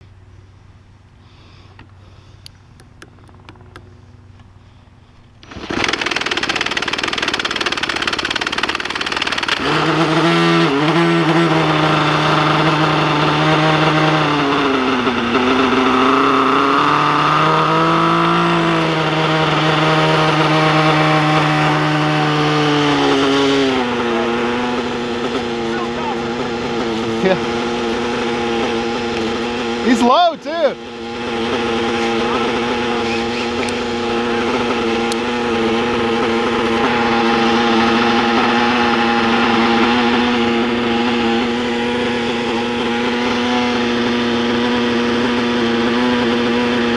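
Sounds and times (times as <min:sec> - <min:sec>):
model aircraft motor and rotors: 0:00.0 - 0:46.9.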